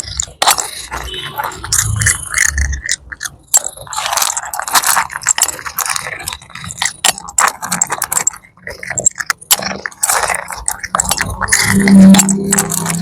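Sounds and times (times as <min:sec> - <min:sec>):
cat crunching dry food: 0:00.0 - 0:13.0.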